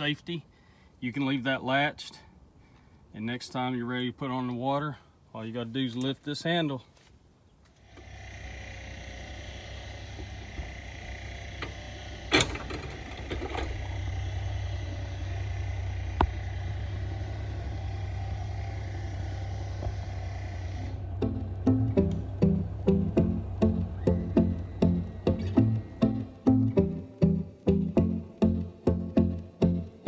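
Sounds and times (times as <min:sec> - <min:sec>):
engine idling: 0:07.8 - 0:30.0.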